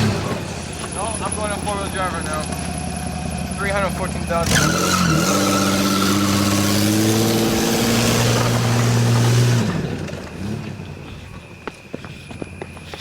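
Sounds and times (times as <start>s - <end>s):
car engine revving under load: 0.0s - 11.1s
tyres spinning in sand: 4.4s - 10.8s.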